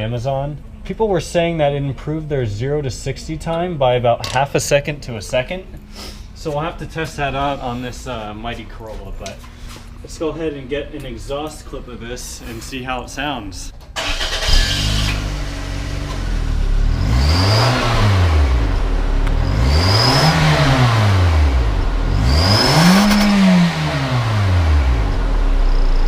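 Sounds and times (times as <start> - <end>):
car engine idling and revving: 13.8 - 26.0.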